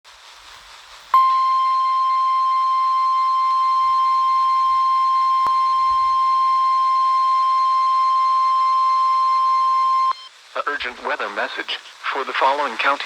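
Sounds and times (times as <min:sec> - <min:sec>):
steady alarm tone: 0:01.2 - 0:10.2.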